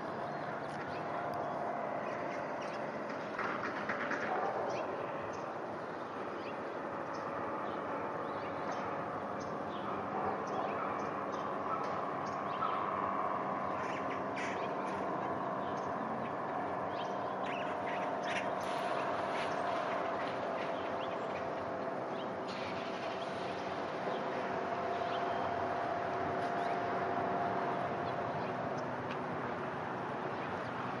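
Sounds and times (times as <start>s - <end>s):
steady droning hum: 0.0s - 31.0s
small birds chirping: 4.7s - 26.9s.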